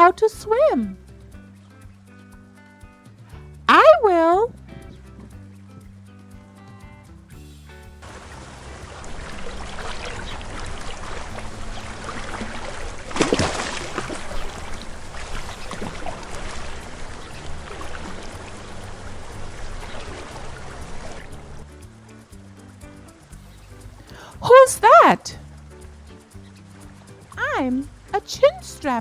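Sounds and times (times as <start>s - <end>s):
soft background music: 0.0s - 29.0s
loud water splash: 8.0s - 21.4s
water sloshing and splashing: 8.0s - 22.2s.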